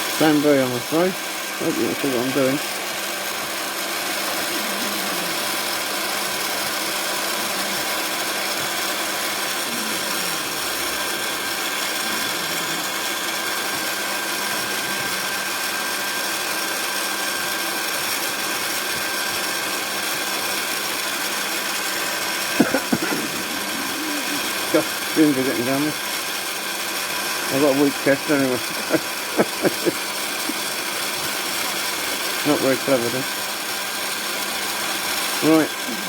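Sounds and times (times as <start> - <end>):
fan motor whine: 0.0 - 36.0
heat gun blowing hiss: 0.0 - 36.0.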